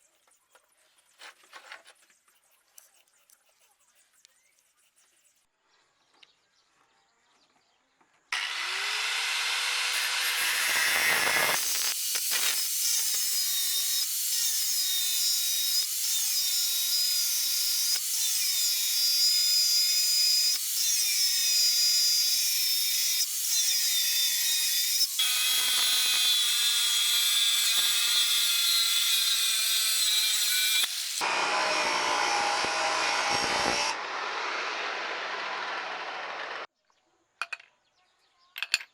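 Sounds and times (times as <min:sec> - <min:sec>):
electric grinder on metal: 0:08.4 - 0:36.7.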